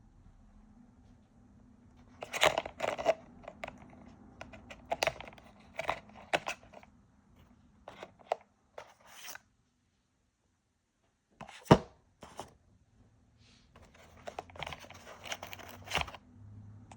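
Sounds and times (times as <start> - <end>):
packaging rustles: 13.8 - 16.2
scrapes and clicks: 13.8 - 16.2.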